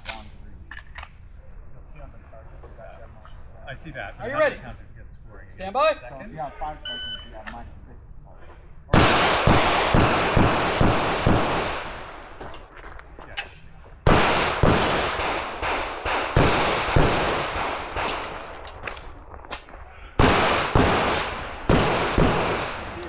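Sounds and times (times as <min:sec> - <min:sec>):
rapid gunshots: 0:09.0 - 0:12.2, 0:14.0 - 0:18.5, 0:19.6 - 0:23.0.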